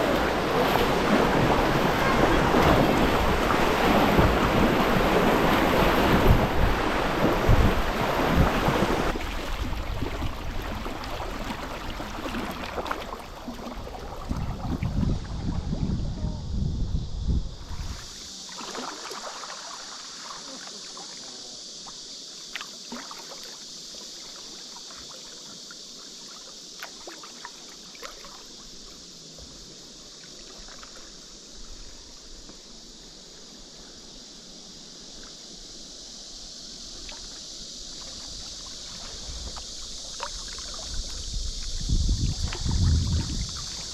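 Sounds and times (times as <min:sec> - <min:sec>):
wind buffeting microphone: 0:00.0 - 0:10.9, 0:13.8 - 0:18.1, 0:40.8 - 0:43.9
river water flowing: 0:00.0 - 0:14.9, 0:18.0 - 0:43.9
water splashes: 0:00.0 - 0:15.8, 0:17.7 - 0:31.5, 0:36.8 - 0:43.9.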